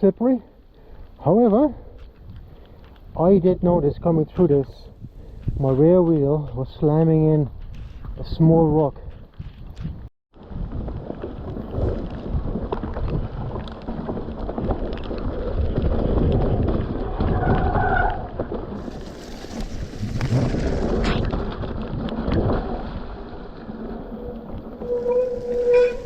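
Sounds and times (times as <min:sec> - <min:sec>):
bike tyres rumbling over rocks: 0:10.4 - 0:26.0
bike brake squeal: 0:24.7 - 0:26.0.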